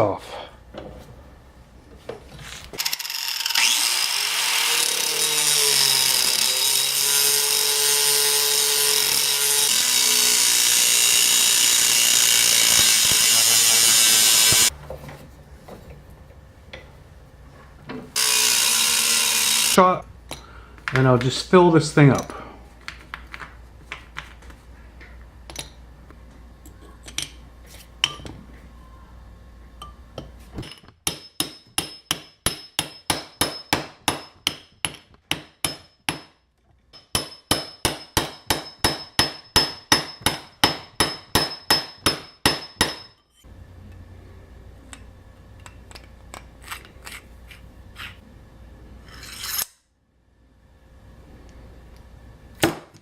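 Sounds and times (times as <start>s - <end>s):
hammer striking metal: 30.6s - 36.4s, 37.0s - 43.2s.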